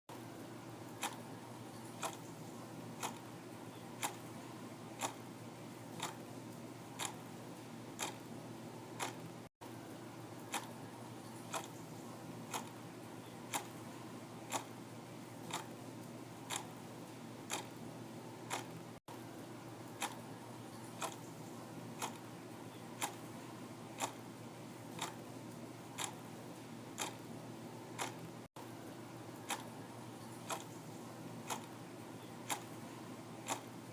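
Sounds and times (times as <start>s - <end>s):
clock ticking: 1.0s - 1.2s, 2.0s - 2.3s, 3.0s - 3.3s, 4.0s - 4.3s, 5.0s - 5.2s, 6.0s - 6.2s, 7.0s - 7.2s, 8.0s - 8.2s, 9.0s - 9.2s, 10.5s - 10.7s, 11.5s - 11.8s, 12.5s - 12.8s, 13.5s - 13.8s, 14.5s - 14.7s, 15.5s - 15.7s, 16.5s - 16.7s, 17.5s - 17.7s, 18.5s - 18.8s, 20.0s - 20.2s, 20.9s - 21.3s, 22.0s - 22.3s, 23.0s - 23.2s, 24.0s - 24.2s, 25.0s - 25.2s, 26.0s - 26.2s, 27.0s - 27.2s, 28.0s - 28.3s, 29.4s - 29.7s, 30.4s - 30.8s, 31.4s - 31.8s, 32.4s - 32.8s, 33.4s - 33.7s.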